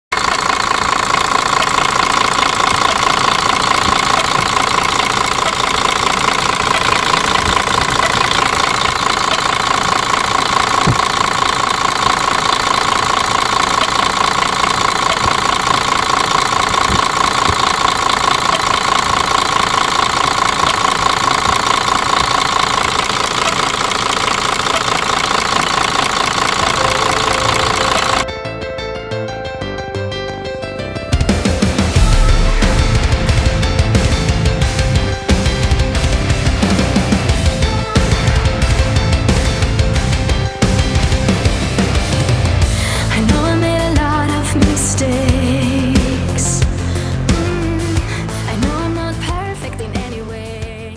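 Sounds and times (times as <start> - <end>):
diesel truck engine running: 0.1 - 28.2, 31.9 - 50.4
engine valve train knocking: 0.1 - 28.2.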